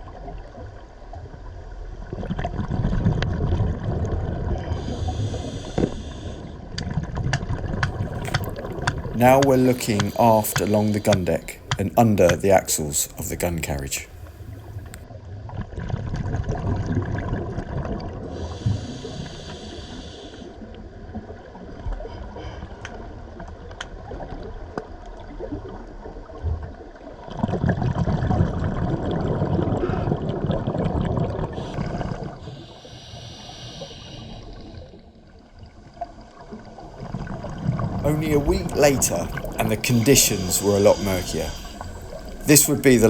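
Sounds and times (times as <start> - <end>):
exhaled bubbles gurgling: 1.8 - 15.0, 15.7 - 20.0, 25.2 - 43.0
regulator inhalation hiss: 4.8 - 6.5, 8.2 - 13.2, 18.4 - 20.5, 32.4 - 34.7, 38.3 - 43.0.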